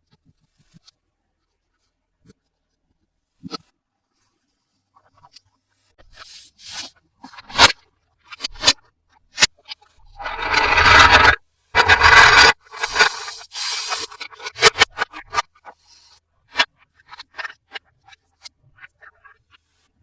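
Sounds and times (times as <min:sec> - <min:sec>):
loud long scrapes: 0:10.0 - 0:15.4.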